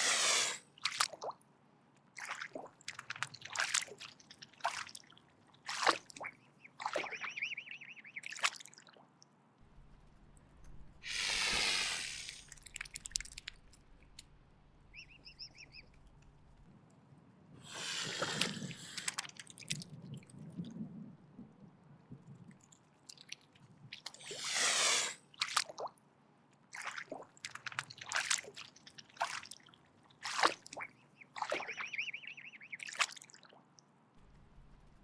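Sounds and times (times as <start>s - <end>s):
swan hissing: 0.0s - 0.6s, 11.0s - 13.4s, 17.6s - 19.2s, 24.2s - 25.2s
swan clicks: 9.7s - 16.7s, 30.3s - 33.3s, 34.2s - 35.0s.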